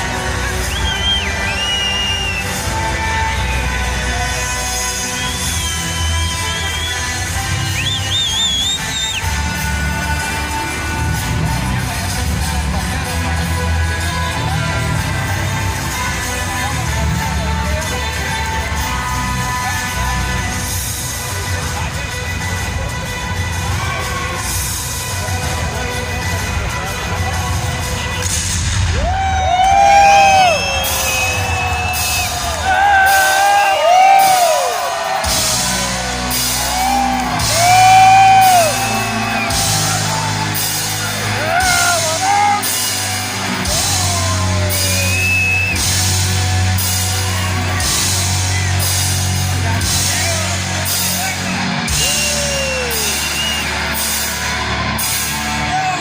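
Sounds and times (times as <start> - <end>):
heavy rock music: 0.0 - 56.0
audience yelling and whooping: 28.8 - 49.0, 49.6 - 56.0.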